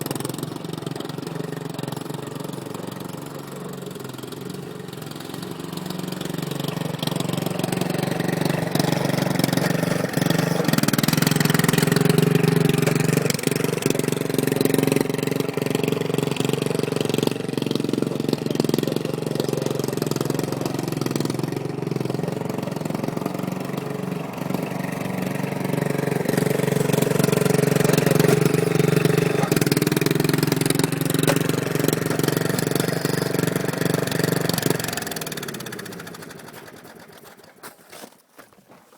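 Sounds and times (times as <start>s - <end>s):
lawn mower engine running: 0.0s - 37.8s.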